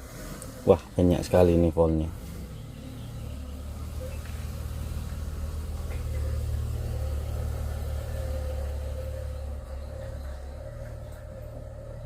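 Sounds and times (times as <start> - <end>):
car engine idling with misfire: 0.0 - 12.0.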